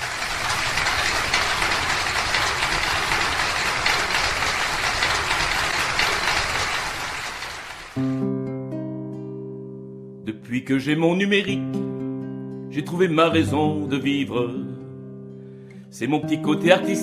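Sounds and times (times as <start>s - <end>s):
audience applauding: 0.0s - 8.0s.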